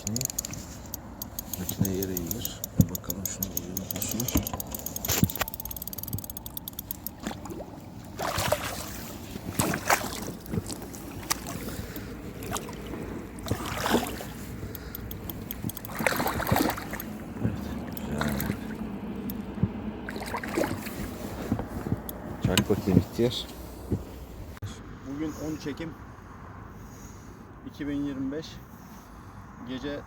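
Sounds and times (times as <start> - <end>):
water sloshing and splashing: 4.1 - 23.0.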